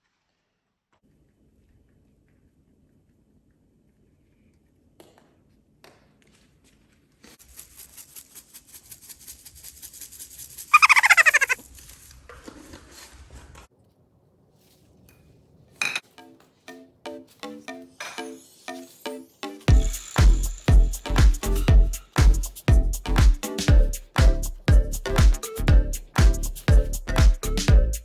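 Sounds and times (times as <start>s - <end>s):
parrot squawk: 10.7s - 11.6s
parrot growling: 10.8s - 11.6s.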